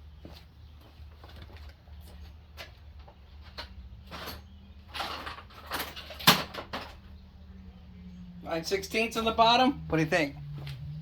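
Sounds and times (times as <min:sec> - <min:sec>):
metal tools clinking and rattling: 0:03.6 - 0:07.0.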